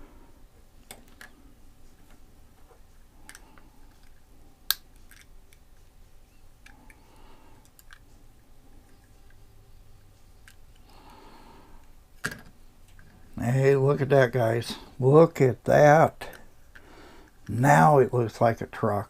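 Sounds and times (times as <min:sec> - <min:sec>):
toy truck parts clicking: 0:03.2 - 0:05.6, 0:07.6 - 0:08.0.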